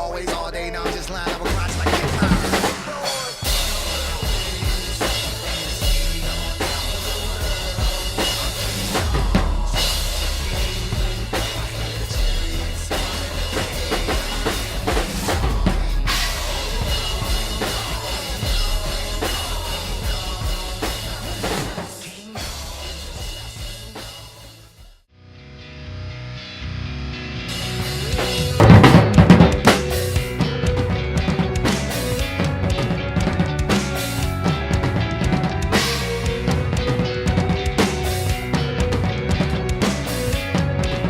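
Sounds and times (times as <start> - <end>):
drum kit playing: 0.0 - 25.1, 27.4 - 41.0
backing track heavy bass line: 0.0 - 41.0.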